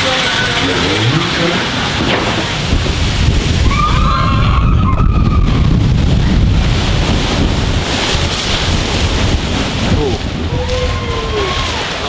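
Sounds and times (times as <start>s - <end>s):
rushing water: 0.0s - 12.0s
wind buffeting microphone: 0.0s - 12.0s
riders screaming: 3.6s - 6.4s, 9.8s - 12.0s.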